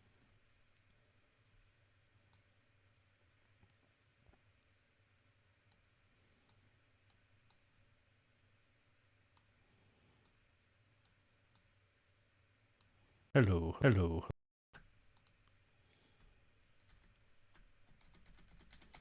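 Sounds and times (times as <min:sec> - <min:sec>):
computer mouse clicks: 0:14.8 - 0:15.6.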